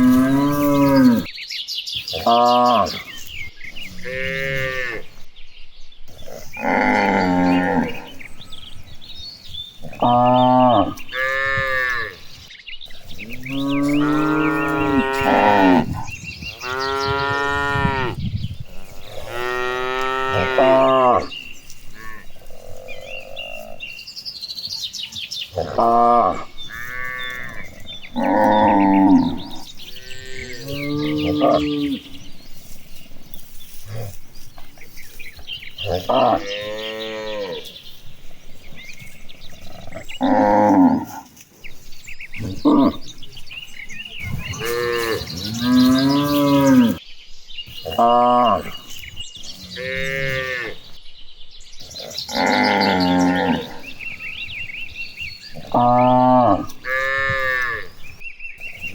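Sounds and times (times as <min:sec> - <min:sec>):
cattle mooing: 0:00.0 - 0:01.3, 0:06.2 - 0:08.2, 0:13.4 - 0:21.4, 0:25.6 - 0:32.2, 0:35.8 - 0:37.7, 0:39.6 - 0:41.3, 0:44.2 - 0:47.0, 0:49.6 - 0:50.8, 0:52.2 - 0:53.9, 0:55.6 - 0:57.9.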